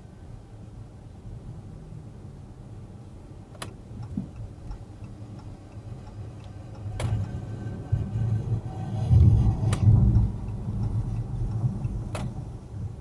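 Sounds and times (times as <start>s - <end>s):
road rumble inside car: 0.0s - 13.0s
faint ticks: 3.5s - 7.4s.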